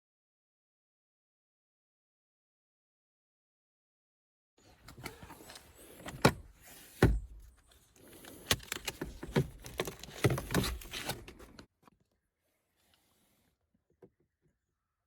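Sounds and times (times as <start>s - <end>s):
plastic parts clicking and knocking: 8.2s - 11.6s.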